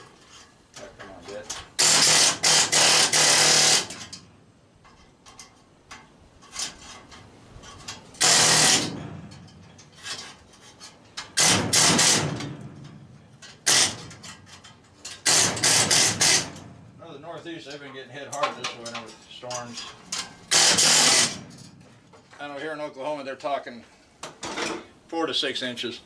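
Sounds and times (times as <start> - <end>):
power tool on sheet metal: 1.8 - 4.2, 8.2 - 9.1, 11.4 - 12.5, 13.6 - 14.2, 15.2 - 16.6, 20.5 - 21.6.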